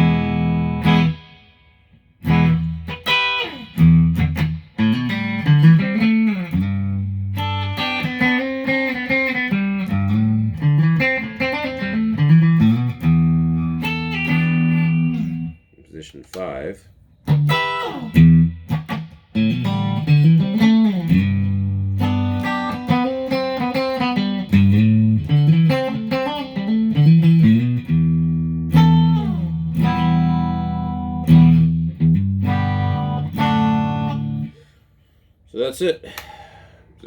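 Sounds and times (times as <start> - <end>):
electric guitar through amplifier: 17.2 - 34.5.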